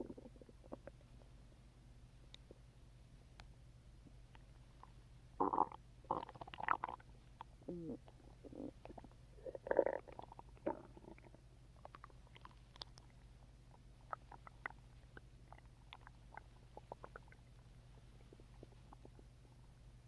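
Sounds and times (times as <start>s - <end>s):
stomach growling and gurgling: 0.0s - 1.1s, 5.4s - 19.6s.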